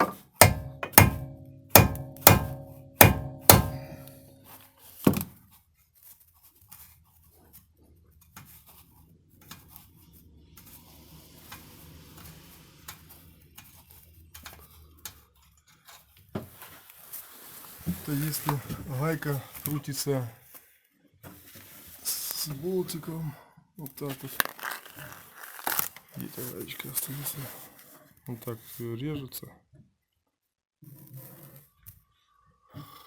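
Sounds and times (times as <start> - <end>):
hammer striking steel: 0.0 - 4.4
faint tool handling: 0.0 - 5.5, 24.0 - 26.9.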